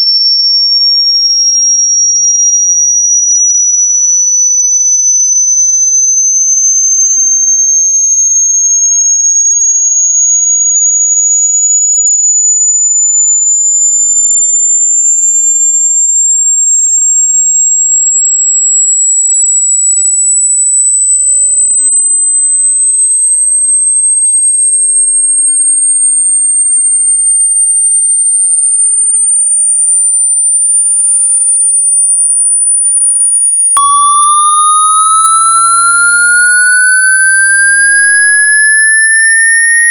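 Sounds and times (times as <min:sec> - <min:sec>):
high-pitched electronic tone rising: 0:33.8 - 0:39.9.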